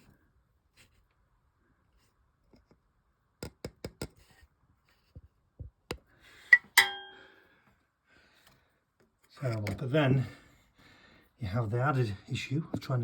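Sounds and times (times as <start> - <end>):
metallic clink ringing: 6.6 - 7.4.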